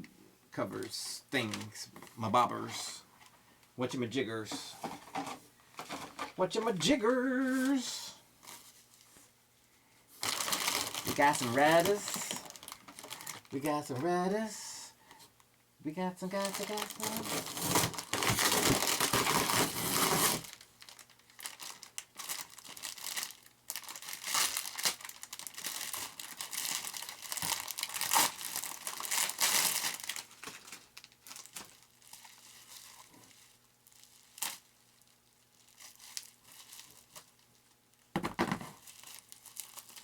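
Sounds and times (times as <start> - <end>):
plastic packaging crinkling and tearing: 10.2 - 14.1, 16.3 - 38.1, 38.8 - 40.0.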